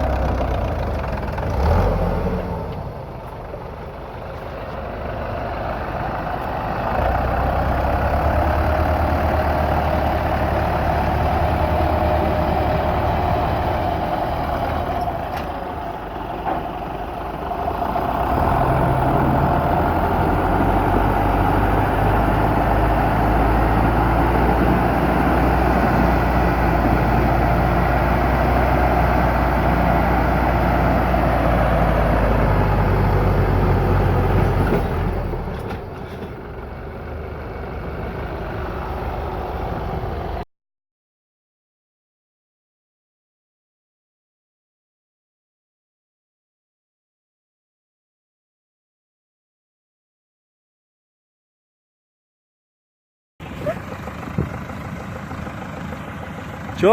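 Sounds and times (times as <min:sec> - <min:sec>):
tractor diesel engines running: 0:00.0 - 0:40.4, 0:53.4 - 0:56.9.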